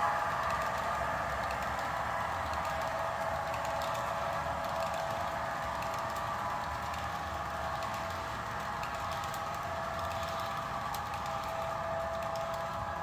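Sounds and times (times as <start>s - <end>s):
wheels clicking on rail: 0.0s - 13.0s.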